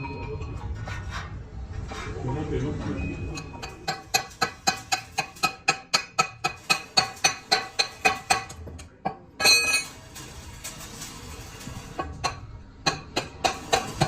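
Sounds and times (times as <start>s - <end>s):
hammer striking steel: 3.4s - 10.0s, 12.0s - 14.0s
loud ringing clang: 9.4s - 10.0s.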